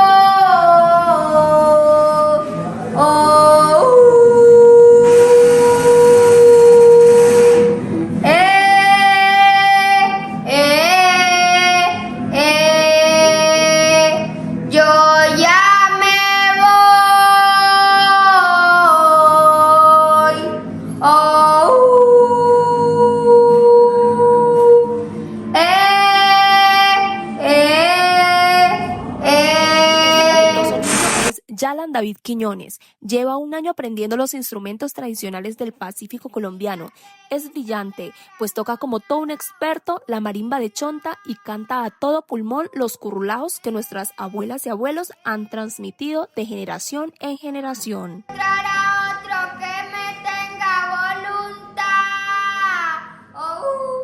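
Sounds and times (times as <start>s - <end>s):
child singing: 0.0s - 2.4s, 8.2s - 25.0s, 25.6s - 30.8s, 36.7s - 39.8s, 40.7s - 42.0s, 43.6s - 45.9s, 48.1s - 54.0s.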